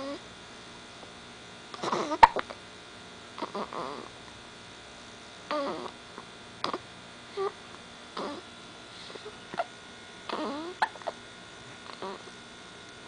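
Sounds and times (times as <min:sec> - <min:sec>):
electrical hum: 0:00.0 - 0:13.0
person hiccuping: 0:01.8 - 0:02.5, 0:09.5 - 0:09.7, 0:10.3 - 0:11.2.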